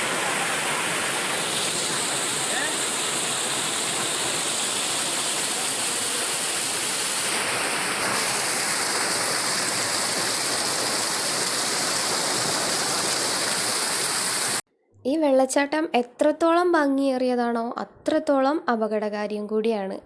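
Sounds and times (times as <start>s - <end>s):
water rushing over rocks: 0.0s - 14.6s.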